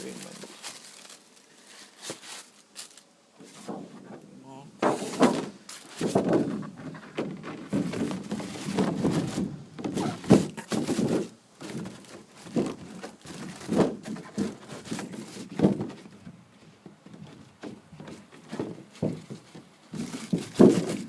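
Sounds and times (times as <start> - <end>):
paper crinkling: 0.0 - 4.0, 4.8 - 16.2
shoe boxes knocking and thudding: 4.8 - 16.2, 17.0 - 21.0.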